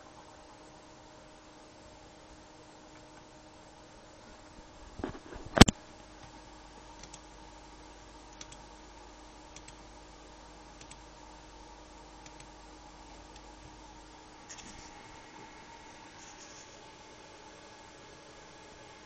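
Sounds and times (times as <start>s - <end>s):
computer fan humming: 0.0s - 19.0s
faint ticks: 8.3s - 8.6s.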